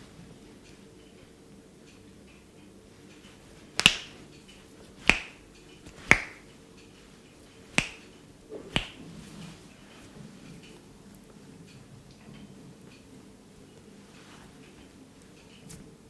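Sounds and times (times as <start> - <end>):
hair cracking pops: 3.8 - 4.2, 5.0 - 6.4, 7.8 - 8.0, 8.8 - 9.0.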